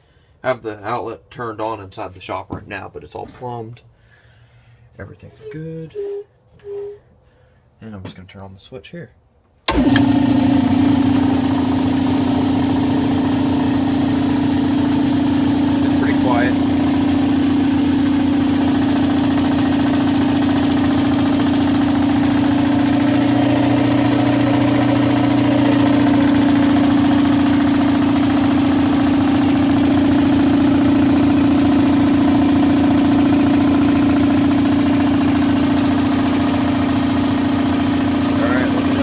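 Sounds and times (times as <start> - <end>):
air compressor humming: 9.7 - 39.0.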